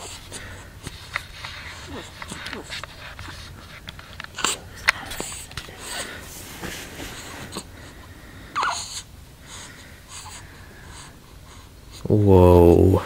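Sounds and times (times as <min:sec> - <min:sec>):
baby breathing noisily: 0:00.0 - 0:12.0
baby snuffles and vocal noises: 0:04.4 - 0:07.7, 0:08.6 - 0:09.1
baby squeak: 0:08.6 - 0:09.0.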